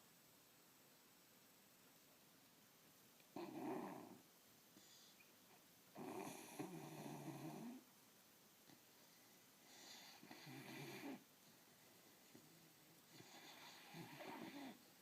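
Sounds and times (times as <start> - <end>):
pet snoring: 3.3 - 4.2, 5.9 - 7.9, 9.7 - 11.2, 12.5 - 14.9.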